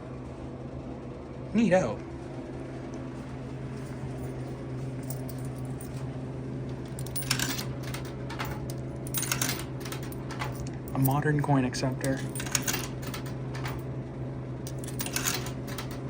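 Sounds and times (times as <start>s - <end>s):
vending machine humming: 0.0s - 16.0s
small metallic clicks and rattles: 6.9s - 11.3s, 14.7s - 16.0s.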